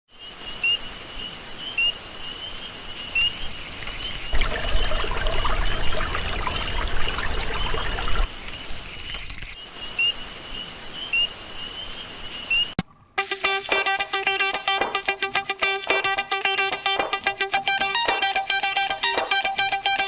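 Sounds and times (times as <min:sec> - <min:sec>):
water splashing and trickling: 0:03.0 - 0:09.7.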